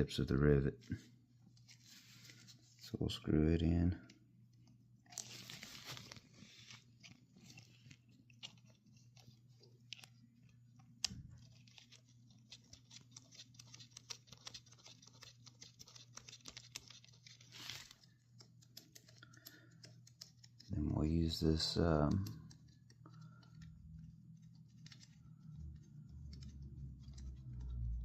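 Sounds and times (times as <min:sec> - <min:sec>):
small metal clicks and ticks: 0:18.0 - 0:20.8, 0:21.6 - 0:28.0.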